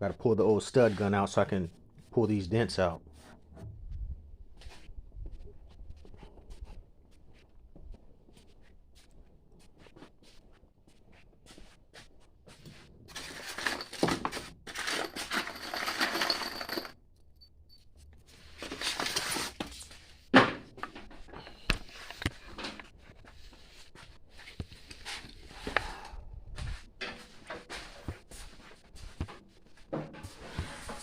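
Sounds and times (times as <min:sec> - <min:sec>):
tools rustling and clattering: 0:12.5 - 0:17.0, 0:18.3 - 0:25.6, 0:26.7 - 0:31.0.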